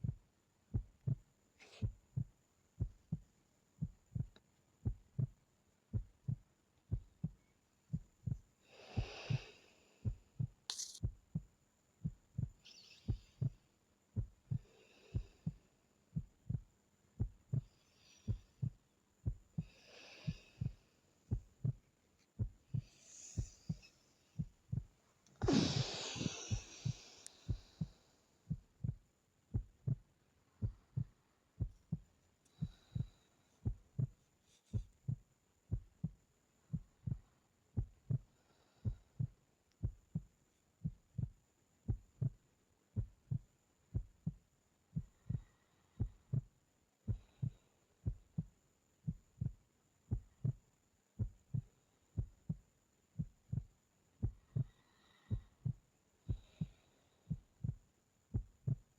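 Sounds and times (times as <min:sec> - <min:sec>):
heartbeat thumps: 0:00.0 - 0:13.6, 0:14.2 - 0:42.4, 0:43.0 - 0:58.9
breathy exhale: 0:08.7 - 0:10.2, 0:19.6 - 0:20.8, 0:22.8 - 0:23.9, 0:25.4 - 0:28.2, 0:54.6 - 0:55.6.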